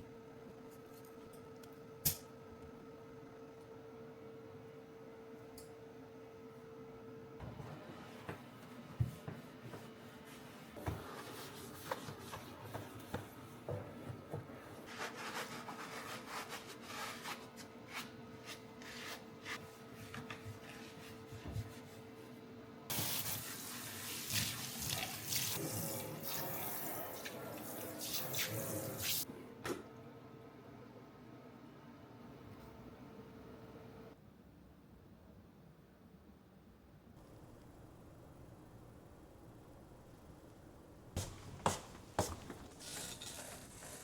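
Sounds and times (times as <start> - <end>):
tap water running: 22.9 - 26.4.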